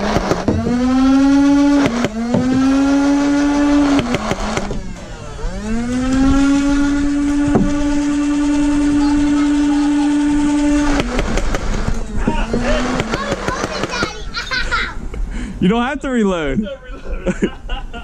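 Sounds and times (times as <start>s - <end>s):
sharp clacks of balls firing: 0.0s - 1.0s, 1.7s - 2.7s, 3.9s - 4.8s, 12.8s - 14.2s
toy blaster flywheels whining: 0.0s - 14.3s.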